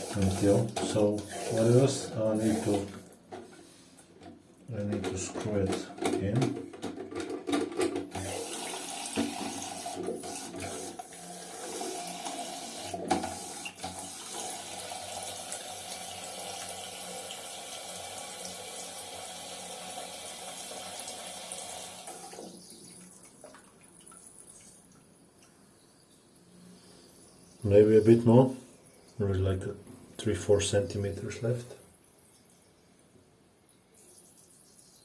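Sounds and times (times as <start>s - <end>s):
water rushing into toilet cistern: 0.0s - 3.2s, 8.1s - 24.8s.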